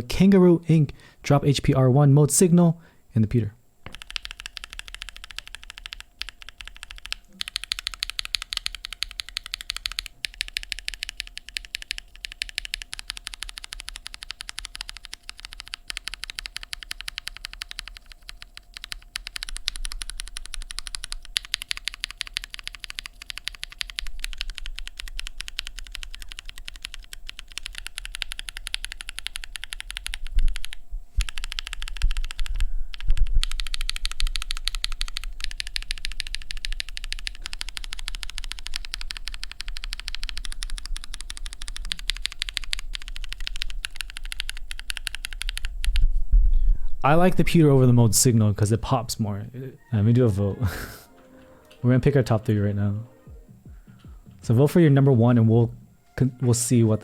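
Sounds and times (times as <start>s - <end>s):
mechanical keyboard typing: 3.9s - 46.0s.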